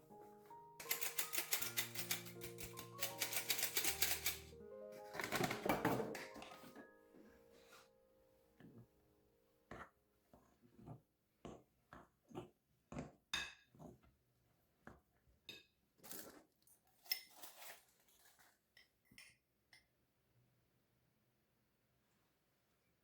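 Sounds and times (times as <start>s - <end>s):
dishes and utensils clinking: 0.8s - 6.9s.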